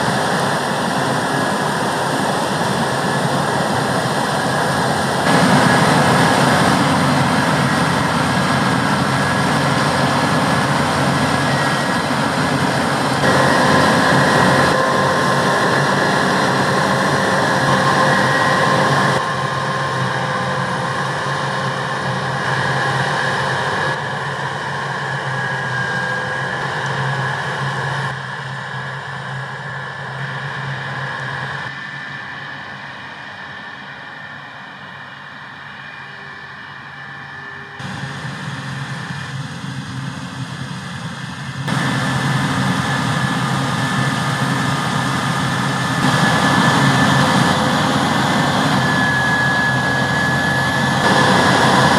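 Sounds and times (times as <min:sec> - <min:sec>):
combine harvester engine drone: 0:00.0 - 0:51.9
high machine whines: 0:00.0 - 0:51.9.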